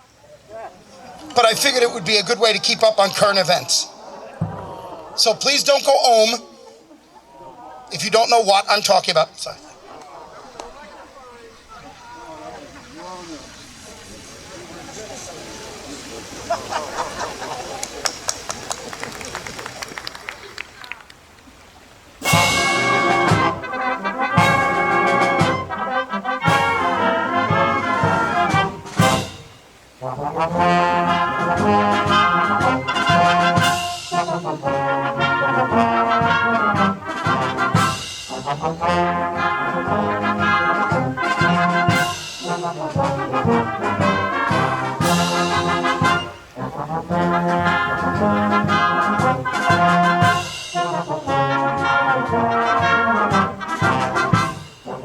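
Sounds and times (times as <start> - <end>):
wind band playing a march: 0.0 - 6.5, 9.5 - 20.1, 22.0 - 55.0
percussion strikes: 22.2 - 55.0.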